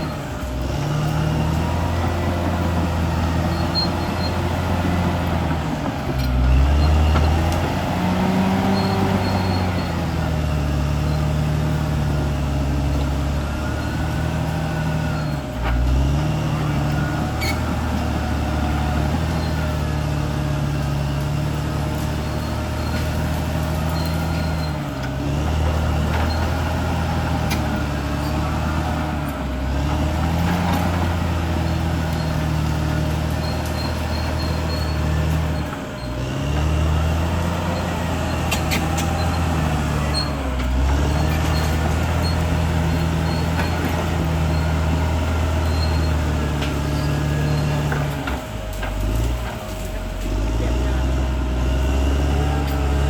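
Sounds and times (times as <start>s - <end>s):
bulldozer diesel engine running: 0.0s - 53.0s.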